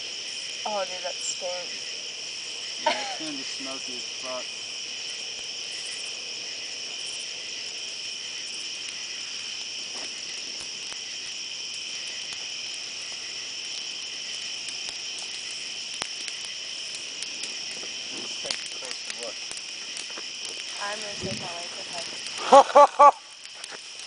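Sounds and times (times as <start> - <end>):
crickets chirring: 0.0 - 24.0
wood fire crackling: 0.0 - 24.0.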